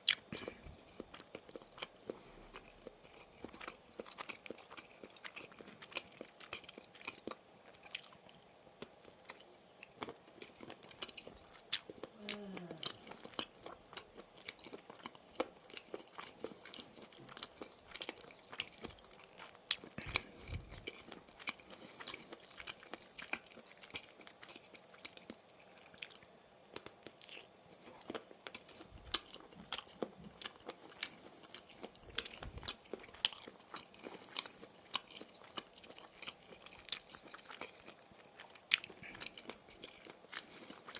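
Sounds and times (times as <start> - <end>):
chewing and biting sausage sticks: 0.0 - 40.9.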